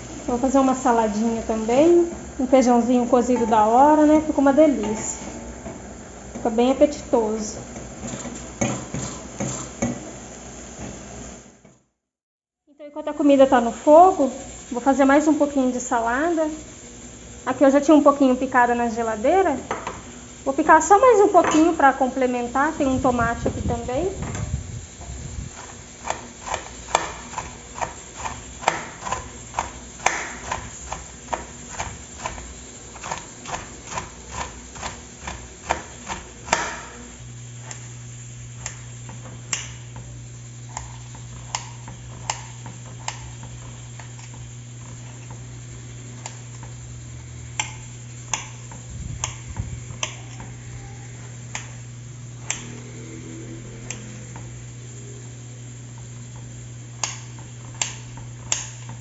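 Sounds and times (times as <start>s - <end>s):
steady low hum: 0.0s - 11.6s, 12.8s - 59.0s
knife chopping on cutting board: 25.6s - 37.0s.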